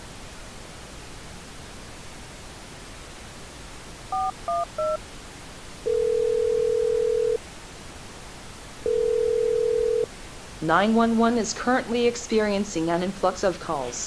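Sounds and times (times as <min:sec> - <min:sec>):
faint steady hiss: 0:00.0 - 0:14.0
phone ringback tone: 0:04.1 - 0:05.0, 0:05.8 - 0:07.4, 0:08.8 - 0:10.1
phone keypad beeps: 0:04.2 - 0:05.0.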